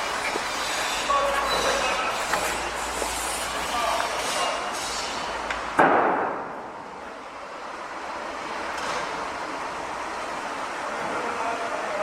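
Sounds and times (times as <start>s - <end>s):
construction site noise: 0.0s - 12.0s
loud bang: 5.8s - 6.7s.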